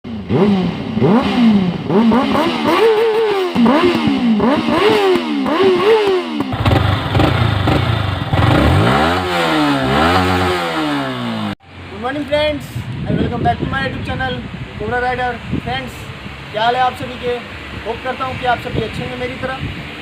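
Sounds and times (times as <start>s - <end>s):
motorcycle engine revving: 0.0s - 11.6s.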